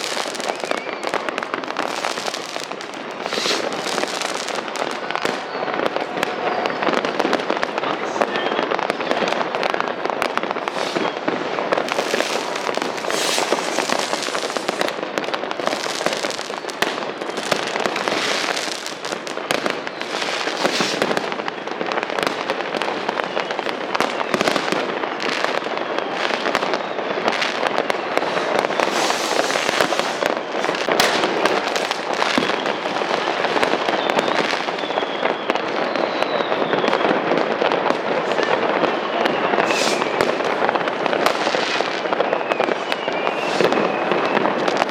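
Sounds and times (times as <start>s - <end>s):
rocket whistles: 0.0s - 7.0s, 10.6s - 15.0s, 25.4s - 37.2s, 38.4s - 44.9s
firecracker crackle: 0.0s - 44.9s
fireworks bangs: 0.0s - 44.9s.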